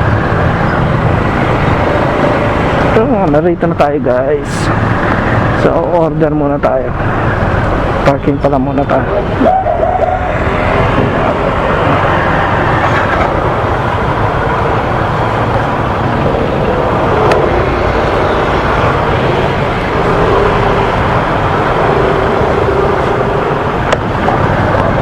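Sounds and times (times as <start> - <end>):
traffic noise: 0.0 - 25.0
motorcycle engine running at low speed: 9.6 - 25.0.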